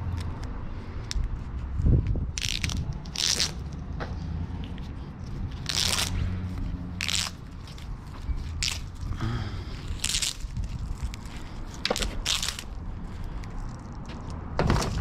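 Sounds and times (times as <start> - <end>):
copper wire crunching scrapes: 1.8 - 3.8, 5.2 - 9.2, 9.8 - 15.0.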